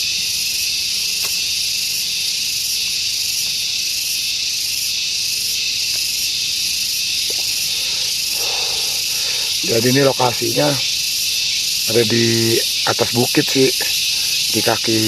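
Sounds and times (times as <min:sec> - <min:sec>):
high-pitched insect chorus: 0:00.0 - 0:15.0.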